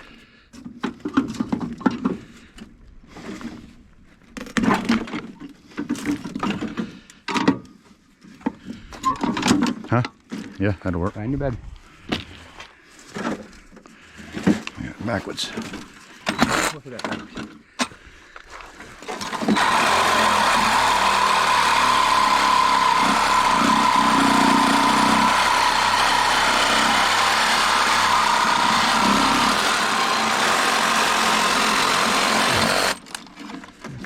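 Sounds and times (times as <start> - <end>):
motor-driven machine whining: 19.2 - 33.1.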